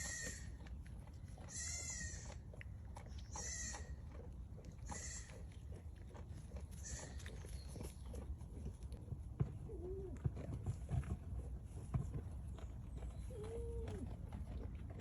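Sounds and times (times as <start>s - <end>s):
goat bleating: 0.0s - 0.6s, 1.4s - 2.4s, 3.3s - 4.1s, 4.8s - 5.5s, 6.8s - 7.4s.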